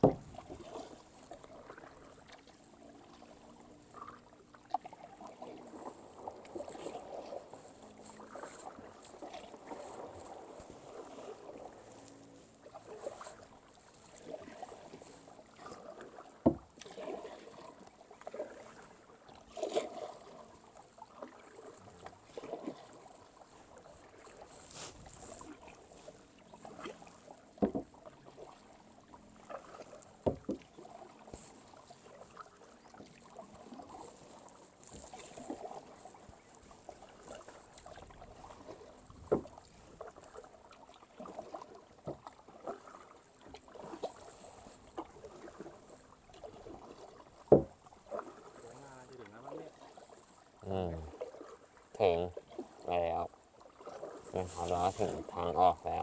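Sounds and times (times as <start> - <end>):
kayak paddle splashing: 0.0 - 56.0.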